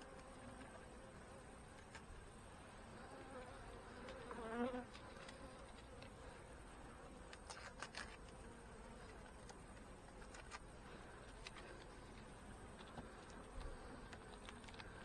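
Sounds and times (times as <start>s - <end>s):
bees buzzing: 2.5s - 7.3s
bee buzzing close by: 2.7s - 7.5s.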